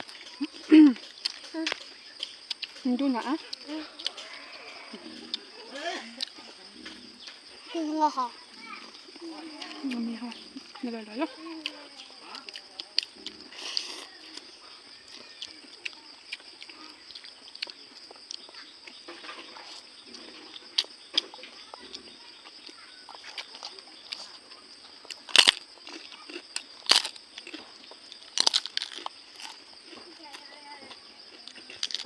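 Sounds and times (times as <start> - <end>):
loud crunches of crisp food: 0.0 - 6.4, 11.6 - 32.0
chewing with crisp clicks: 0.0 - 7.4, 9.0 - 32.0.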